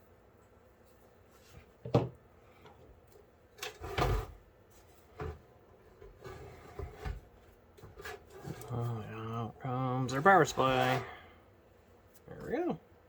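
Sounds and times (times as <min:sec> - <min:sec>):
hardware knocks and clunks: 0:01.8 - 0:02.2.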